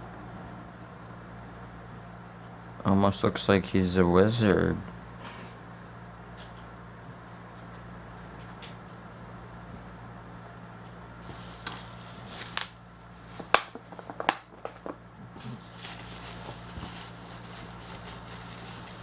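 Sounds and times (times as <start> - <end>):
plastic packaging clicks and crackles: 11.2 - 19.0
plastic packaging rustling: 11.2 - 19.0.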